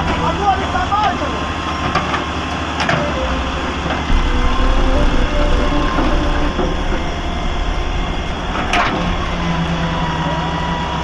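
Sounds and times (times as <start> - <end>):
diesel engine rumbling: 0.0 - 11.0.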